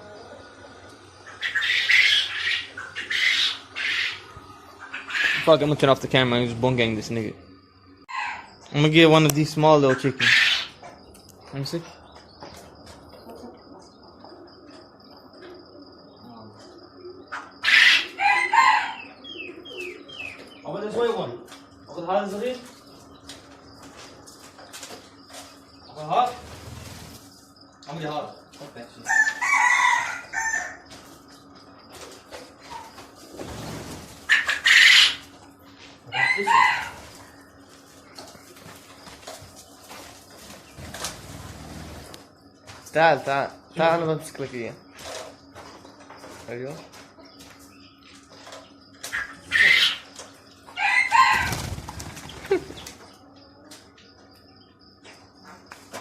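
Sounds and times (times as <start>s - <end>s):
chickens crowing: 0.0s - 6.2s, 7.8s - 8.7s, 9.7s - 11.0s, 12.0s - 21.4s, 28.8s - 39.2s, 49.0s - 53.6s
harsh chicken squawk: 1.2s - 5.6s, 8.1s - 8.5s, 9.8s - 10.8s, 17.3s - 19.2s, 29.1s - 30.8s, 34.2s - 35.3s, 36.1s - 37.2s, 49.0s - 50.1s, 50.7s - 52.4s
wings flapping: 32.8s - 35.2s, 51.0s - 53.0s.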